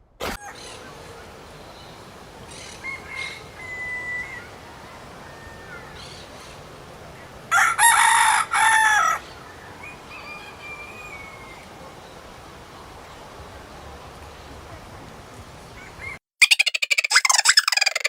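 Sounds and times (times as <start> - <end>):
rooster crowing: 0.4 - 1.9, 2.5 - 6.6, 7.5 - 11.6.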